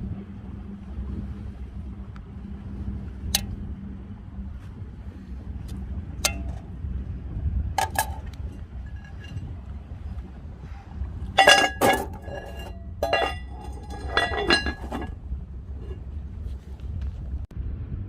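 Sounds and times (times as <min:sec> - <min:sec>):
low rumble of wind: 0:00.0 - 0:18.0
tableware clinking: 0:07.8 - 0:08.2, 0:11.4 - 0:15.1.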